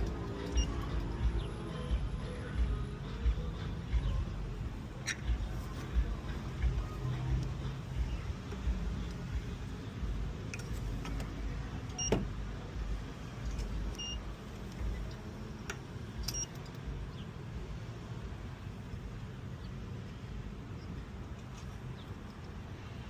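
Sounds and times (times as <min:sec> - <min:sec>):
steady low hum: 0:00.0 - 0:23.0
high electronic beeps: 0:00.4 - 0:02.8, 0:14.0 - 0:14.3.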